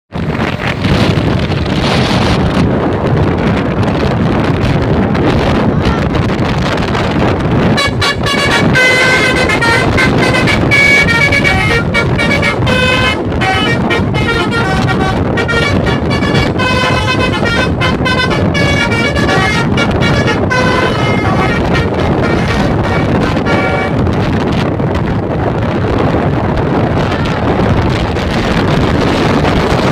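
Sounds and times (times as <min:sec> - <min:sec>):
rumble of vehicles: 0:00.1 - 0:29.9
wind: 0:00.1 - 0:29.9
musical horn toots: 0:07.6 - 0:24.3.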